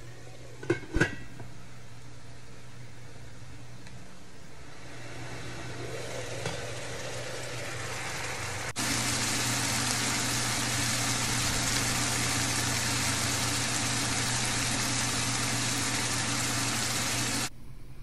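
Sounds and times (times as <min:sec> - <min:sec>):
covered pan simmering: 0:04.6 - 0:17.5.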